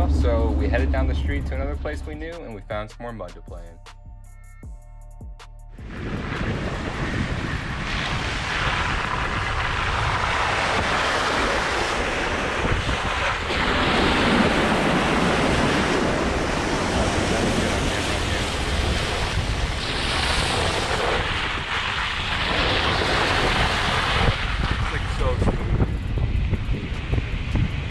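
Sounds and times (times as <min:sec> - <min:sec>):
wind buffeting microphone: 0:00.0 - 0:03.6, 0:05.8 - 0:27.9
engine rumble: 0:00.0 - 0:27.9
splashing through mud and water: 0:06.0 - 0:25.6.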